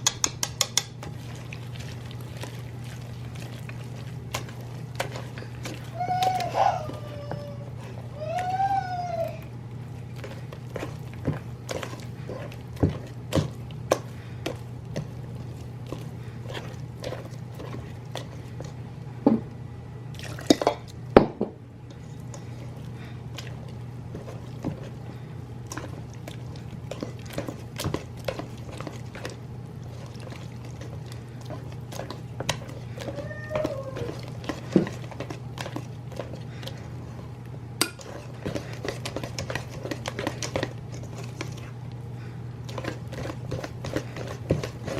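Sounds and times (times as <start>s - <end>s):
utensils and dishes clicking: 0.0s - 1.1s
steady low hum: 0.0s - 44.9s
wet liquid sounds: 0.8s - 19.0s, 20.1s - 21.1s, 21.8s - 44.9s.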